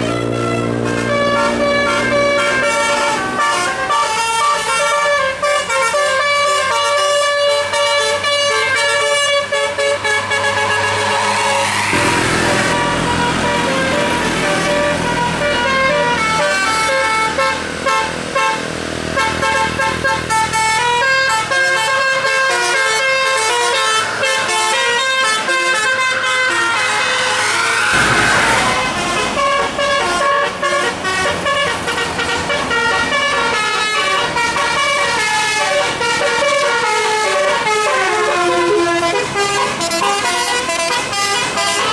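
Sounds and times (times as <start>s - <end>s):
bus engine hum: 0.0s - 41.9s
bus musical air horns: 0.0s - 41.9s
short rushing noise: 9.2s - 15.5s, 24.3s - 30.6s.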